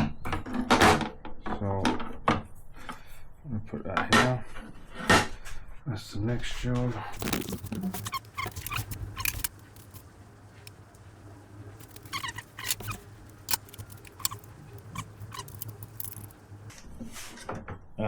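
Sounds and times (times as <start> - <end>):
tools clicking and knocking: 7.2 - 16.5.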